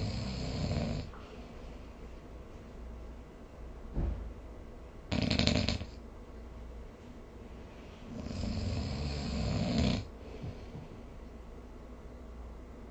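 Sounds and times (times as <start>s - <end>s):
person snoring: 0.0s - 1.1s, 5.1s - 6.0s, 8.1s - 10.1s.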